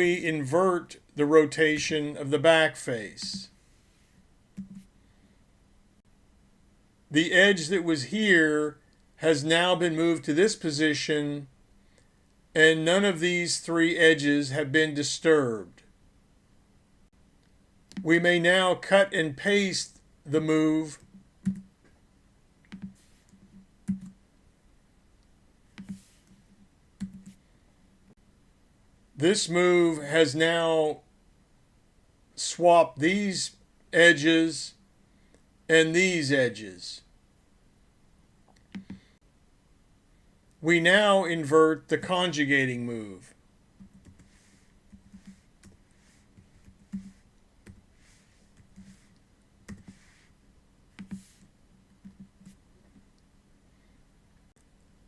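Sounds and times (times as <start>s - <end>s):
computer mouse clicks: 4.6s - 4.9s, 21.0s - 21.7s, 22.6s - 24.2s, 25.8s - 26.4s, 27.0s - 27.4s, 38.5s - 39.0s, 46.4s - 47.8s, 51.0s - 53.0s.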